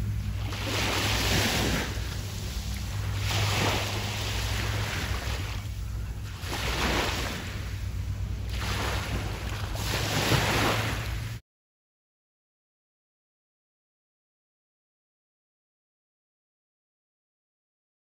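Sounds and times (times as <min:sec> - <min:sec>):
steady low hum: 0:00.0 - 0:11.4
waves breaking on beach: 0:00.0 - 0:11.4.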